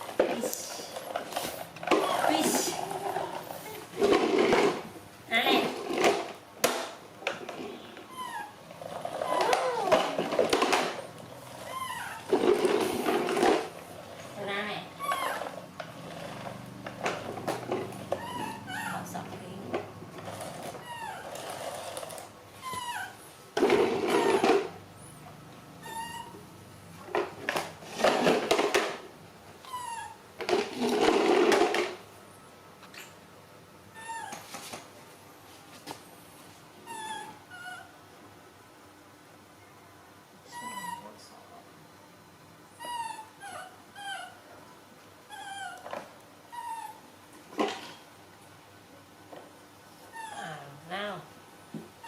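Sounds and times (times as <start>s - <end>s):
baby monkey cooing: 9.2s - 10.0s
baby monkey harsh cries: 11.7s - 12.3s, 18.2s - 19.0s, 42.8s - 44.4s.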